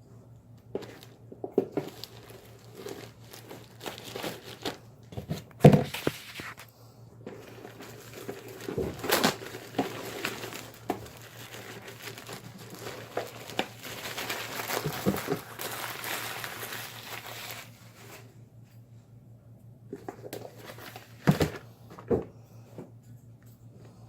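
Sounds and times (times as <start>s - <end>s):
packaging crinkling and rustling: 0.7s - 6.7s, 7.3s - 18.3s, 20.0s - 22.2s.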